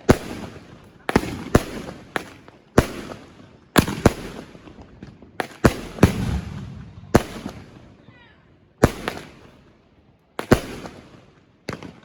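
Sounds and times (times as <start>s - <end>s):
fireworks bangs with rumbling echo: 0.0s - 8.2s, 8.8s - 9.8s, 10.4s - 12.0s.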